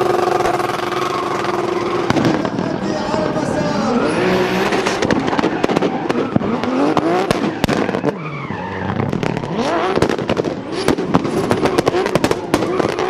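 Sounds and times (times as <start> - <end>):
car engine revving: 0.0 - 13.0
exhaust pops and bangs: 0.1 - 2.8, 4.7 - 8.2, 8.9 - 13.0.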